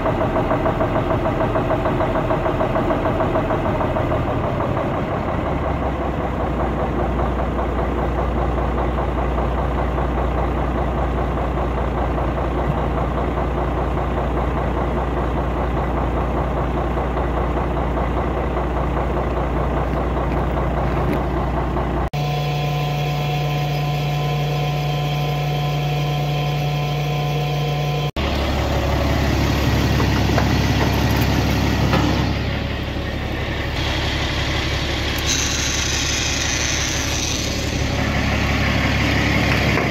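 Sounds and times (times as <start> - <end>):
heavy machinery engine running: 0.0 - 39.9.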